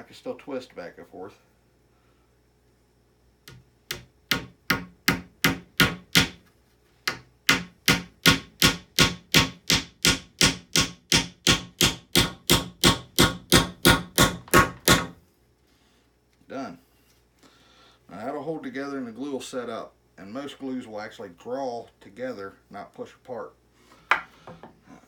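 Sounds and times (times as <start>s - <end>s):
hammer striking nail into wood: 3.5s - 6.4s, 7.1s - 15.2s.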